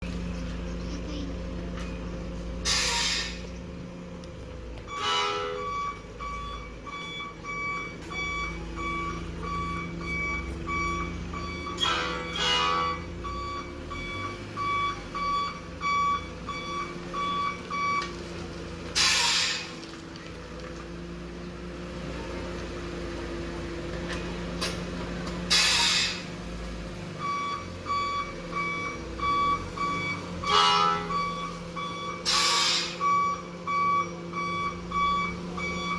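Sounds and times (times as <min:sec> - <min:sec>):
short air-brake hisses: 0:02.6 - 0:03.4, 0:19.0 - 0:19.7, 0:25.5 - 0:26.2, 0:32.2 - 0:33.0
rapid electronic reversing beeps: 0:31.1 - 0:35.9.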